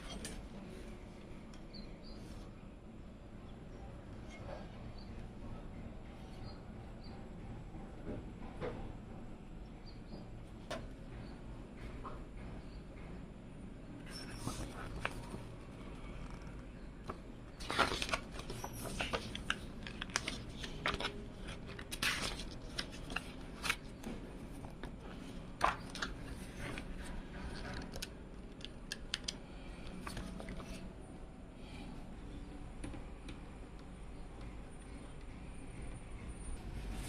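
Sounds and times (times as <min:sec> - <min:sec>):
steady low hum: 0:00.0 - 0:37.0
packaging rustling: 0:17.6 - 0:24.0.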